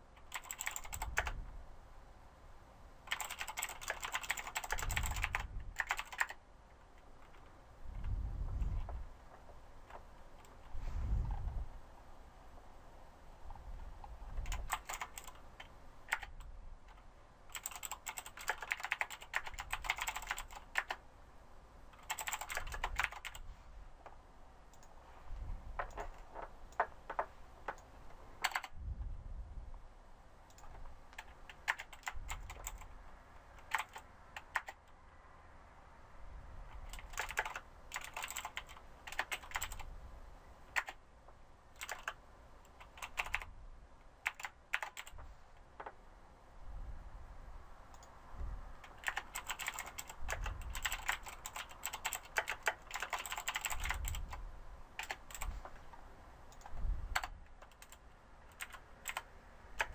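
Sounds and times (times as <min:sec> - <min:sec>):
computer keyboard typing: 0:00.2 - 0:01.4, 0:03.0 - 0:06.4, 0:14.4 - 0:21.0, 0:21.9 - 0:23.4, 0:25.8 - 0:28.8, 0:30.5 - 0:32.9, 0:33.6 - 0:34.9, 0:36.7 - 0:39.9, 0:40.7 - 0:41.0, 0:41.8 - 0:43.5, 0:44.2 - 0:45.2, 0:48.8 - 0:54.4, 0:55.0 - 0:55.6, 0:56.5 - 0:59.9.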